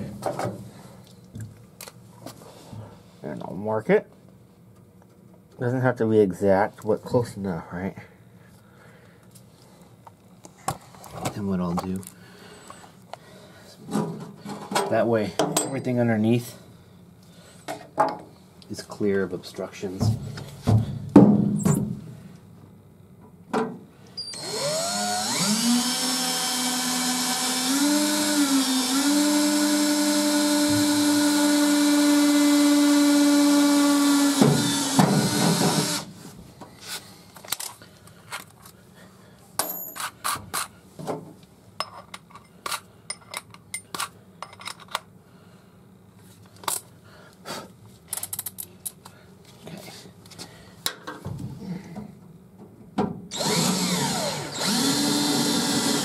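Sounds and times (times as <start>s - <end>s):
electric drill boring through metal: 24.3s - 36.1s, 53.3s - 56.0s.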